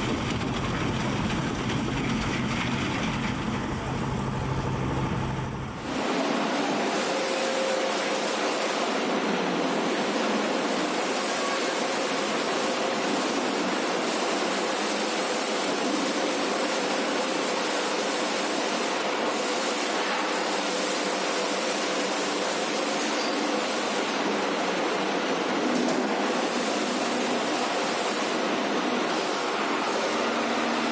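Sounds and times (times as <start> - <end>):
snowblower rushing noise: 0.0 - 17.8.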